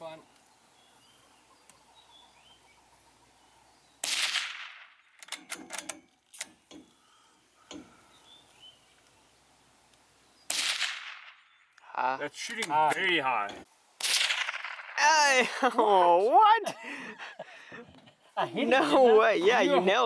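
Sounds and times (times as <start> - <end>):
shotgun shots echoing: 4.0 - 5.0, 10.5 - 11.4, 14.0 - 15.0
sharp metallic clicks: 4.0 - 6.9, 12.4 - 15.0.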